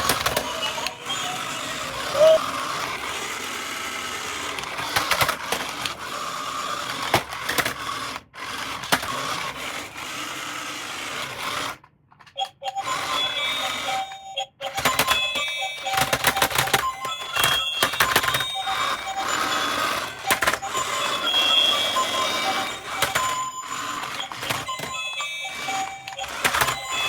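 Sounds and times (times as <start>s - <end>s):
small electric motor whirring: 0.2s - 5.0s.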